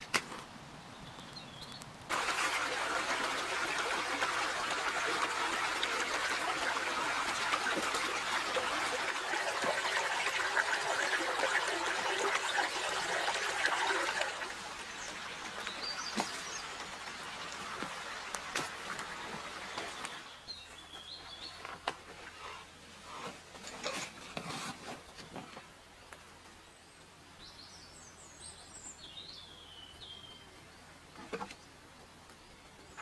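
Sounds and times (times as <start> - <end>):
bird chirping: 0.9 - 1.9
water trickling: 2.1 - 20.3.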